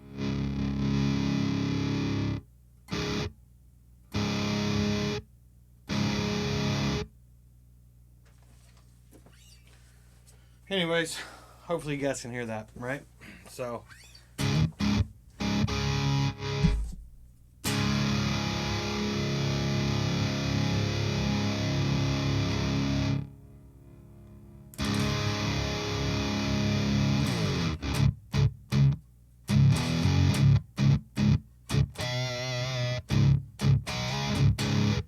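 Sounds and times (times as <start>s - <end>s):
distorted electric guitar chords: 0.0s - 3.4s, 4.1s - 5.2s, 5.9s - 7.1s, 14.4s - 35.0s.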